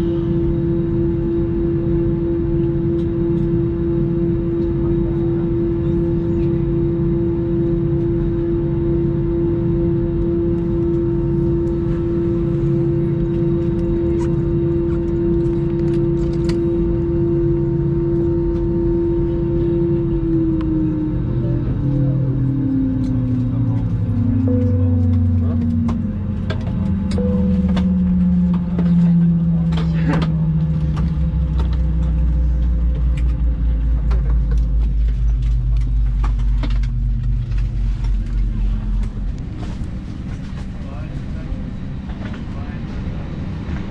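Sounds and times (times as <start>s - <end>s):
jet engine whine in cabin: 0.0s - 43.9s
low rumble: 0.0s - 43.9s
tones dropping in pitch: 24.0s - 29.3s.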